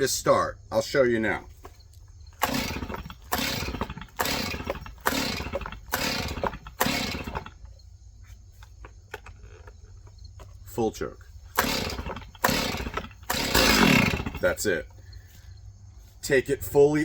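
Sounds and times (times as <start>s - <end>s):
recoil starter pulls cranking engine: 2.2s - 7.9s, 10.7s - 15.0s.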